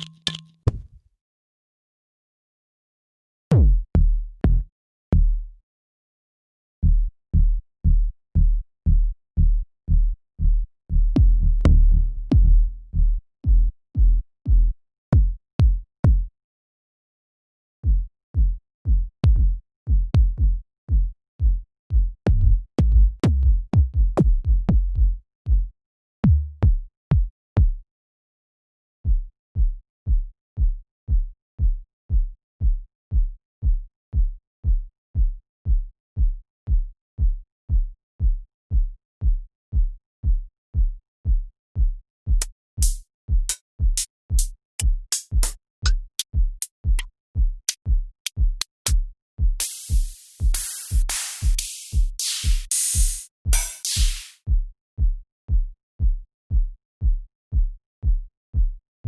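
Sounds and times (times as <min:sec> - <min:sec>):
electronic kick drum: 0:03.5 - 0:03.9, 0:11.2 - 0:12.6, 0:17.8 - 0:20.6, 0:21.5 - 0:27.8, 0:42.4 - 0:47.1, 0:47.7 - 0:58.8
hi-hat ticks: 0:42.4 - 0:47.1, 0:47.7 - 0:49.0, 0:49.6 - 0:54.4.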